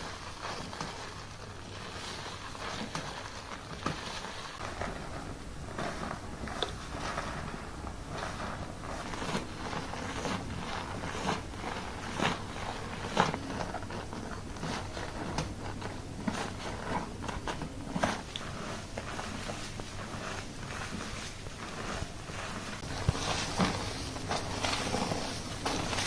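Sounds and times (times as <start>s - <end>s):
fingers scrubbing lathered hair: 0.0s - 26.0s.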